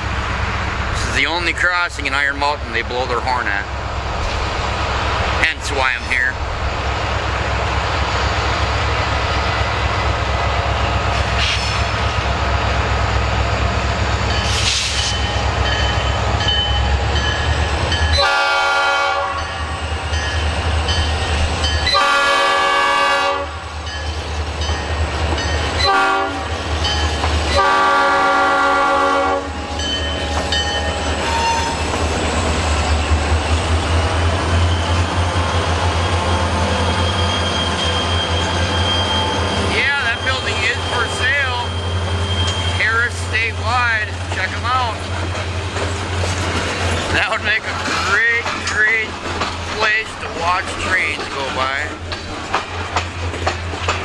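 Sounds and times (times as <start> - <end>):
diesel locomotives rumbling: 0.0 - 54.0
locomotive horn blasts: 18.1 - 19.5, 21.9 - 23.6, 25.8 - 26.6, 27.5 - 29.6.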